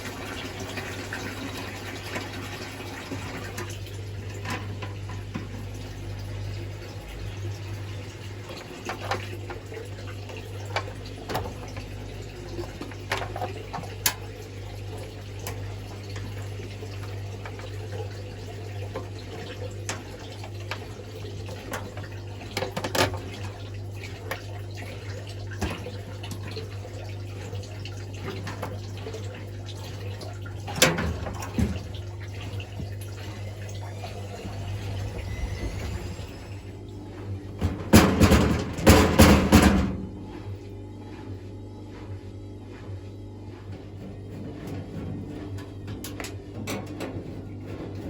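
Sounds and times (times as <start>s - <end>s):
washing machine taking in water: 0.0s - 48.0s
low hum: 33.2s - 38.8s.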